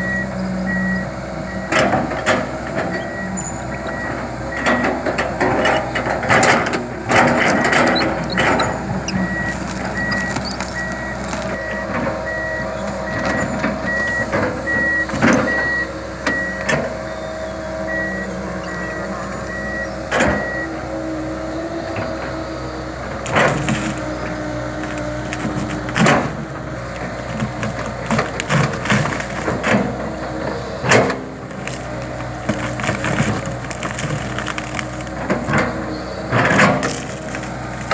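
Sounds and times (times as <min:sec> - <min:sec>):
excavator diesel engine running: 0:00.0 - 0:37.9
sharp knocks and cracks: 0:27.0 - 0:29.9, 0:30.9 - 0:35.7.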